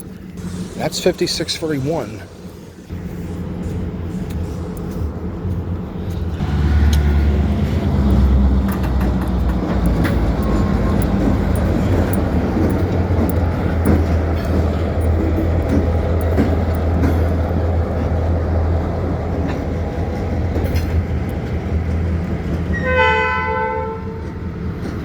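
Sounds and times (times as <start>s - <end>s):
locomotive diesel engine rumbling: 0.0s - 25.0s
sharp clicks: 8.0s - 17.4s.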